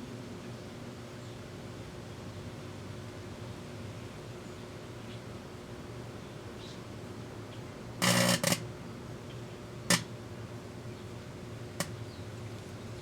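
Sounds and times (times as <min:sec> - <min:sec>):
microwave oven humming: 0:00.0 - 0:13.0
metal arcing crackle and snaps: 0:08.0 - 0:08.6.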